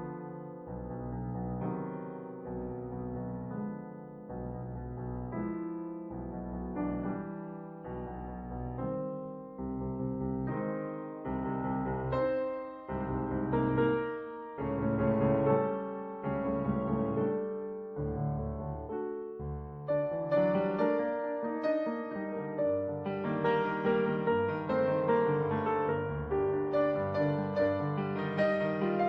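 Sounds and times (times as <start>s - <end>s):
slow piano music: 0.0s - 29.0s.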